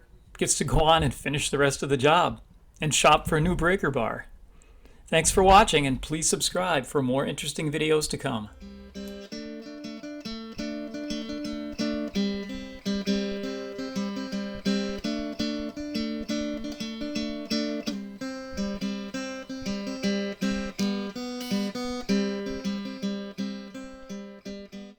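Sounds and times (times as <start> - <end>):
acoustic guitar strumming: 7.4 - 24.9.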